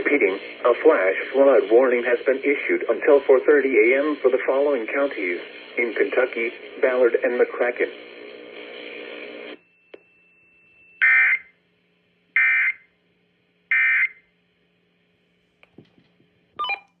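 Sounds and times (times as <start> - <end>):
brief tone: 9.6 - 11.0, 16.6 - 17.0.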